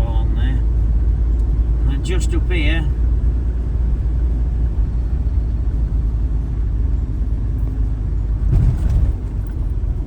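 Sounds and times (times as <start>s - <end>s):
engine and tyre rumble: 0.0s - 10.0s
vehicle thump: 8.4s - 9.6s.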